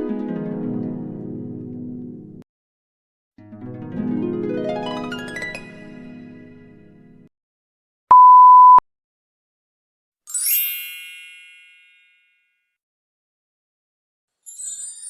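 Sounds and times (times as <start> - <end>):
censor bleep tone: 8.1 - 8.8
sparkle of high chiming tones: 10.3 - 12.4, 14.5 - 15.0.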